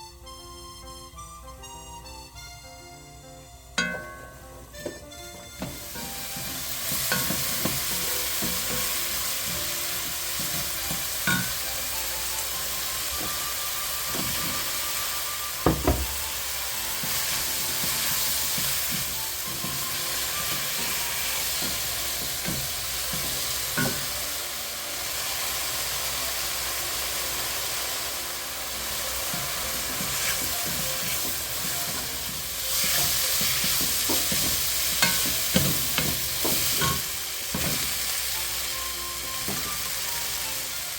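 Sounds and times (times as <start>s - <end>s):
food sizzling in frying pan: 3.6s - 40.9s
utensil knocking against pan: 5.6s - 11.6s, 15.6s - 16.2s, 16.9s - 24.2s, 29.3s - 37.9s.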